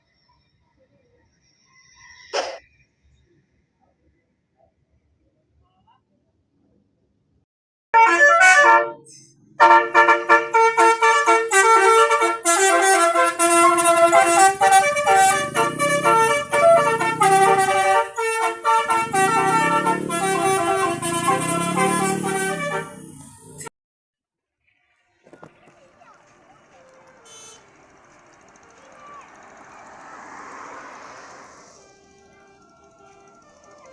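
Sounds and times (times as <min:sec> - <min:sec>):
musical horn tune: 0:08.0 - 0:23.7.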